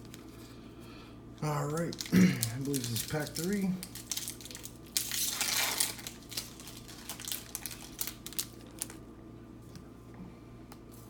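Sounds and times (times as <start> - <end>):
card pack wrapper tearing: 1.7 - 9.0.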